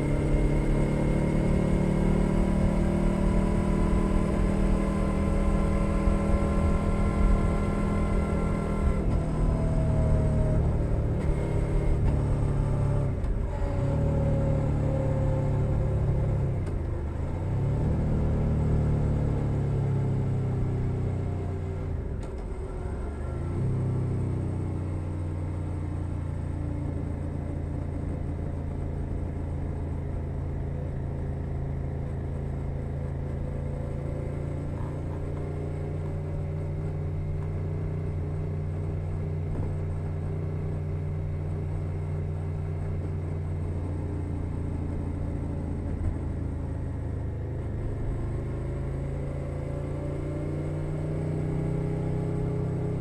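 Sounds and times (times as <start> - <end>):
motorcycle engine revving: 0.0 - 16.5, 33.4 - 53.0.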